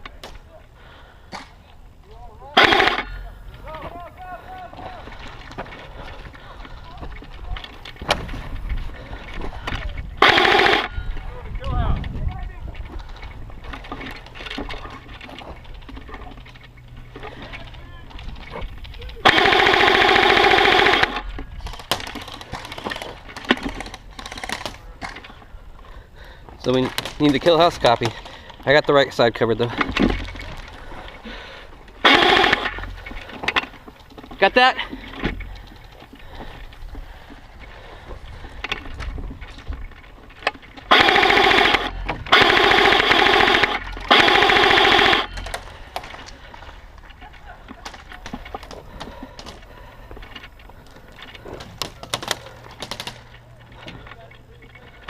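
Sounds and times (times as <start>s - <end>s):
sharp cracks: 1.3s - 8.4s, 9.0s - 11.0s, 12.8s - 25.4s, 26.6s - 54.4s
airsoft rifle full-auto burst: 2.6s - 3.2s, 10.2s - 11.0s, 19.2s - 24.8s, 32.0s - 33.1s, 40.9s - 45.6s.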